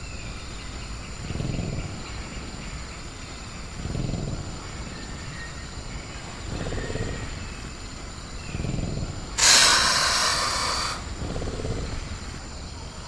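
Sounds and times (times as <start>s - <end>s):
crickets droning: 0.0s - 13.0s
creature breathy growls: 1.0s - 2.6s, 3.6s - 5.2s, 8.4s - 13.0s
loud hiss: 9.3s - 12.4s.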